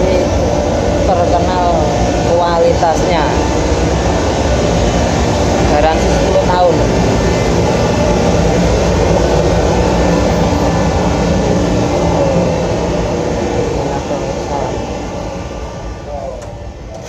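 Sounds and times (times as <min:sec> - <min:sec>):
ferry engines droning: 0:00.0 - 0:17.0.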